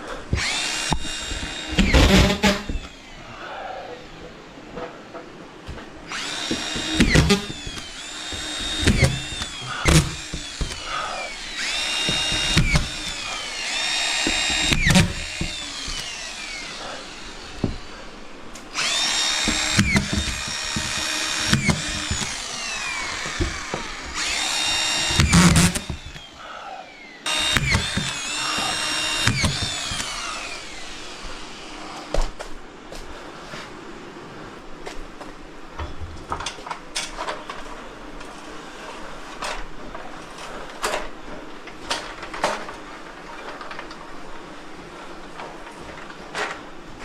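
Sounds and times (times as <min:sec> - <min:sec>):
power drill whining: 0:00.0 - 0:03.4, 0:05.7 - 0:32.2
sharp knocks and clicks: 0:05.7 - 0:10.9, 0:11.6 - 0:16.6, 0:18.6 - 0:26.3, 0:27.3 - 0:30.5.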